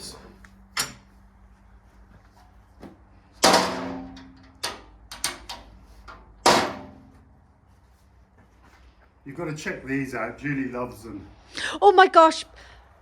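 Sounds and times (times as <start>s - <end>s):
metal cover banging shut: 3.4s - 5.6s, 6.4s - 7.1s.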